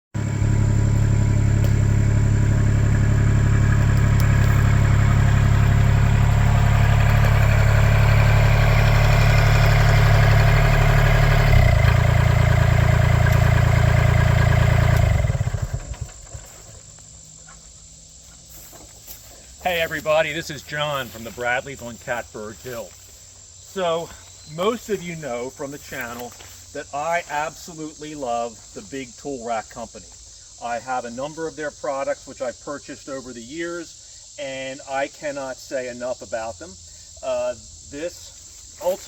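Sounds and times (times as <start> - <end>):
tractor diesel engine running: 0.1 - 17.9, 18.5 - 23.1.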